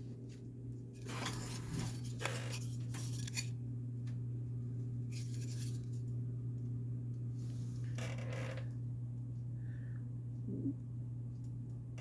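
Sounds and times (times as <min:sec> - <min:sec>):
steady low hum: 0:00.0 - 0:12.0
armor rustling and scraping: 0:01.0 - 0:03.5, 0:05.1 - 0:06.0.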